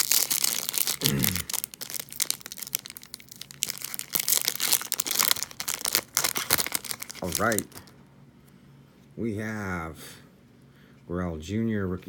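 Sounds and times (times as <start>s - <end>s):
foil wrapper crinkling and tearing: 0.0s - 8.0s.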